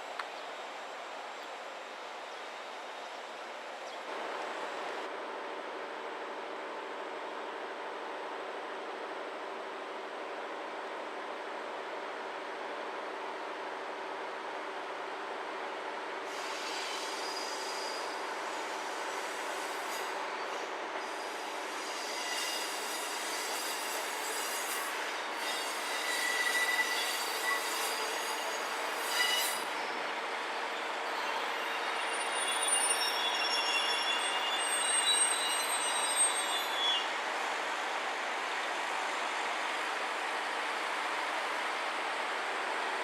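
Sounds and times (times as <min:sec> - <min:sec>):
train rolling on rails: 0:00.0 - 0:43.0
train wheels squealing: 0:16.3 - 0:37.2.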